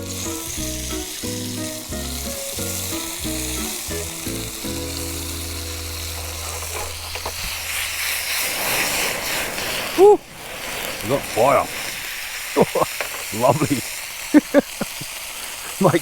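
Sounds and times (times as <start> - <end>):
background music: 0.0 - 7.2
oil sizzling in a frying pan: 0.0 - 16.0.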